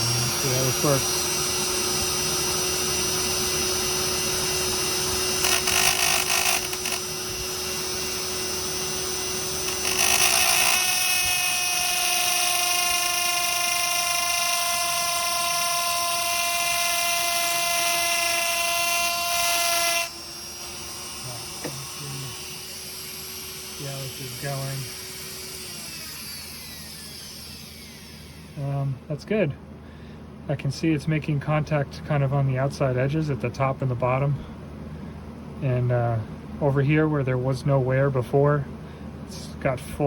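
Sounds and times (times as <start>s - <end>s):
lathe humming: 0.0s - 28.6s
rotary tool grinding whine: 0.0s - 28.7s.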